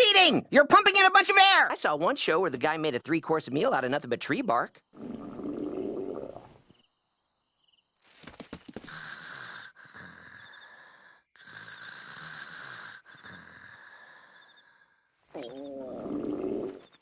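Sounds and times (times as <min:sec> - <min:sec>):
cartoon stomach growl: 0:05.0 - 0:06.6, 0:15.4 - 0:16.9.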